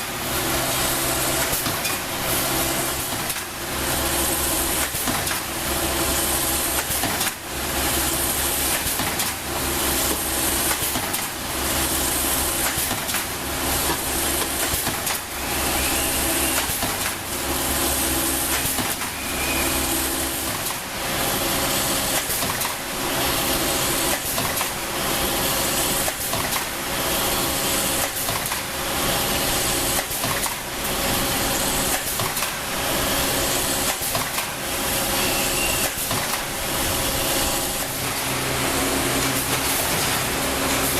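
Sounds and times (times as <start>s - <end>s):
wire cutting machine running: 11.4s - 26.2s, 28.7s - 40.9s.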